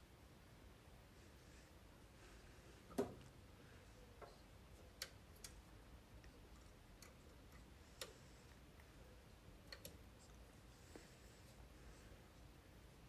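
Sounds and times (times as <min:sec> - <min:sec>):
faint clicks of metal tools: 0:06.2 - 0:08.9, 0:09.6 - 0:10.4.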